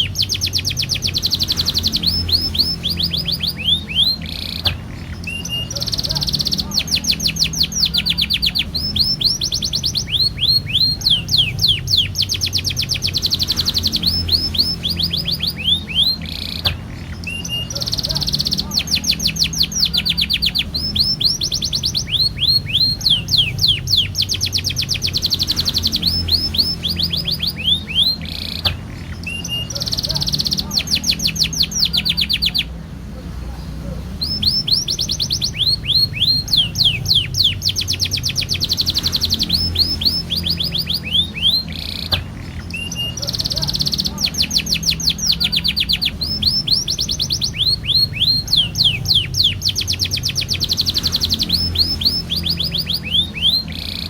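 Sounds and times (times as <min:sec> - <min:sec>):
canary singing: 0:00.0 - 0:54.0.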